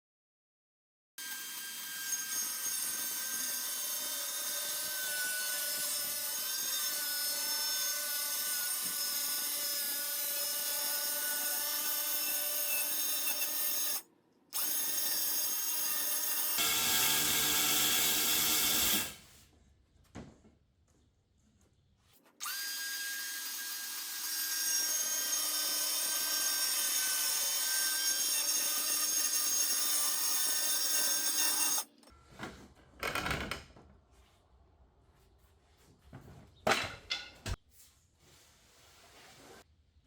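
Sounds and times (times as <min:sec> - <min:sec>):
power drill whine: 0:16.6 - 0:19.2.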